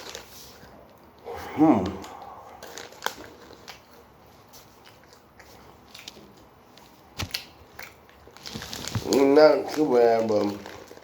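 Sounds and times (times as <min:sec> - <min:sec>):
person chewing nuts: 0:01.0 - 0:06.5.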